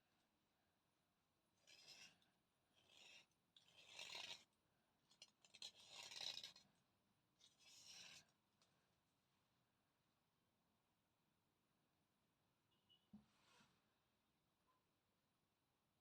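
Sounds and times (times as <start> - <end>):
slate pencil scraping: 1.6 - 4.5, 5.1 - 6.7, 7.4 - 8.3.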